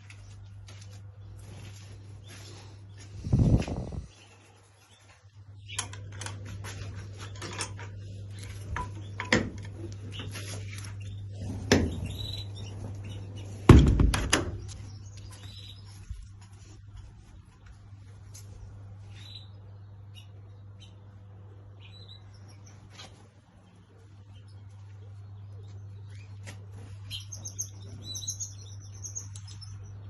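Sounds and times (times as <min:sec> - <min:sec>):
cage birds chirping: 0:00.0 - 0:30.0
steady low hum: 0:00.0 - 0:30.0
clicks and rattles: 0:05.6 - 0:10.2.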